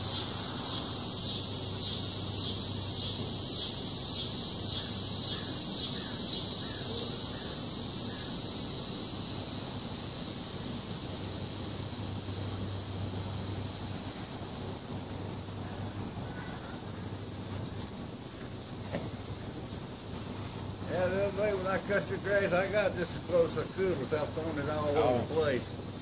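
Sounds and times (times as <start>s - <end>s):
insect pulsing buzz: 0.0s - 26.0s.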